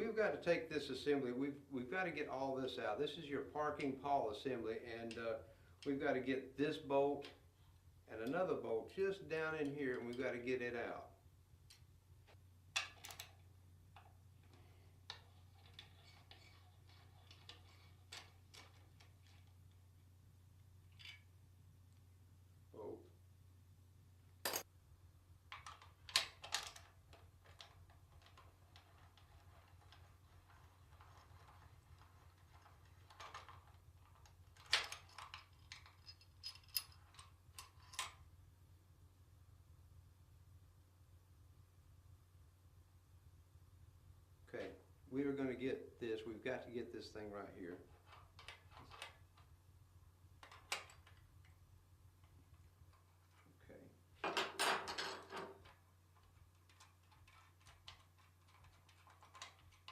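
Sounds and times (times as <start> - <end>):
tools clinking against metal: 24.5 - 24.7, 34.8 - 38.1.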